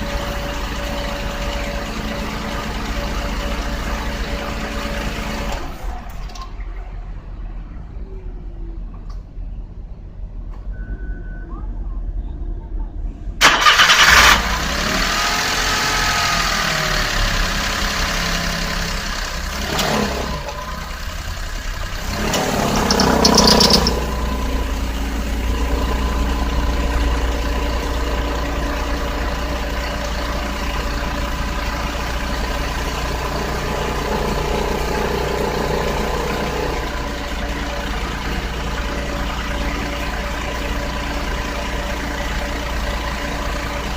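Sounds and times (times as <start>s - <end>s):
car engine starting and revving: 13.4s - 29.8s
car engine idling: 13.4s - 43.9s.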